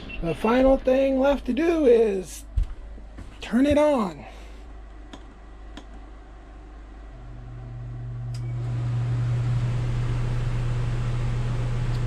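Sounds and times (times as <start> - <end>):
furnace blower motor humming: 6.3 - 12.0.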